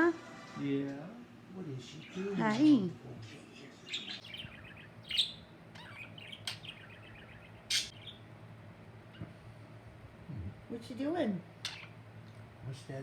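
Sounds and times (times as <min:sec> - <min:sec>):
budgerigars chirping and warbling: 0:03.8 - 0:08.3, 0:11.6 - 0:12.0.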